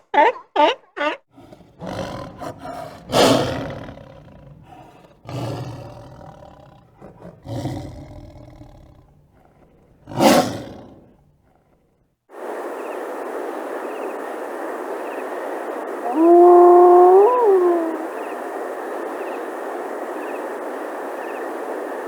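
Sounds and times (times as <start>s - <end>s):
big cat roaring: 1.4s - 11.8s, 16.1s - 18.2s.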